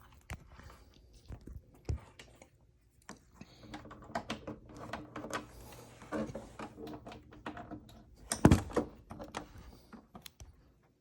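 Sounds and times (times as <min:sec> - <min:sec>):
cable clicks taps and rustles: 0:01.3 - 0:11.0.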